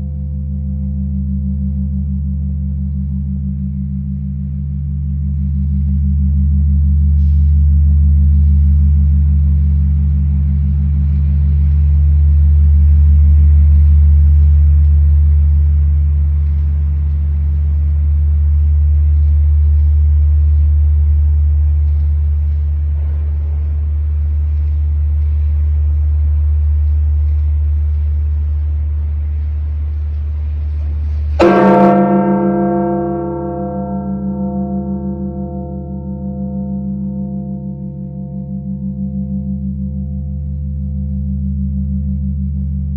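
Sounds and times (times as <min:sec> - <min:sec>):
large church bell tolling: 0:31.3 - 0:42.9.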